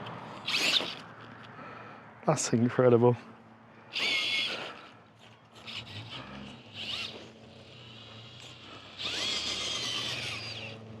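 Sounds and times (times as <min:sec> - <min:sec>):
electric motor whining: 0:00.0 - 0:01.2, 0:03.9 - 0:11.0.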